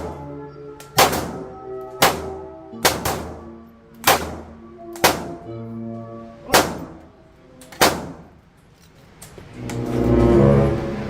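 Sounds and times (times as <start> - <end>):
pistol shots: 0.0 - 5.5, 6.5 - 7.1, 7.7 - 8.4
background music: 0.0 - 8.6, 9.2 - 11.0.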